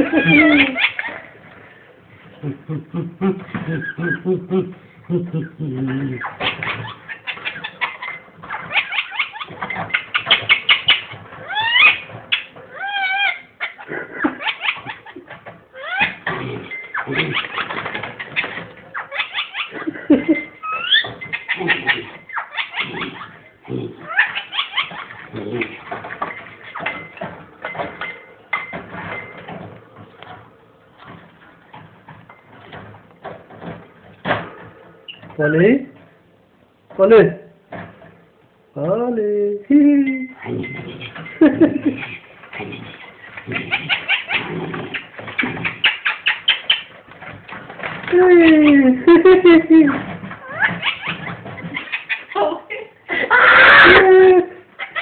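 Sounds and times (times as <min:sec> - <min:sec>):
parakeet chattering and squawking: 0:00.0 - 0:01.5, 0:05.4 - 0:28.8, 0:40.3 - 0:47.1, 0:49.9 - 0:54.0, 0:54.6 - 0:55.0.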